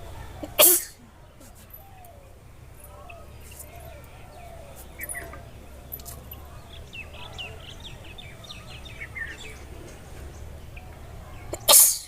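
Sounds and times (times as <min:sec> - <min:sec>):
birds chirping: 0:00.0 - 0:12.0
person sneezing: 0:00.4 - 0:01.0, 0:11.6 - 0:12.0.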